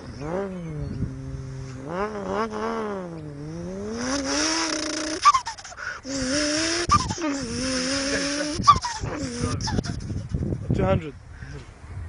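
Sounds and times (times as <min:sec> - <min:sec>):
person imitating car engine: 0:00.0 - 0:10.4
hissing whoosh: 0:03.3 - 0:10.0.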